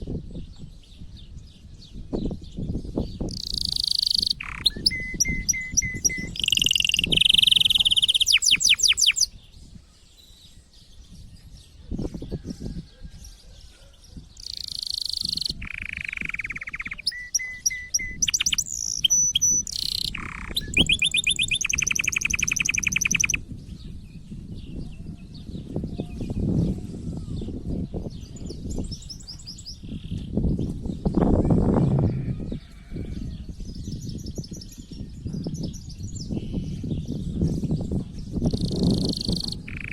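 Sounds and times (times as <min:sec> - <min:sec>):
canary singing trills: 0:03.0 - 0:09.5, 0:14.3 - 0:23.4, 0:38.4 - 0:39.9.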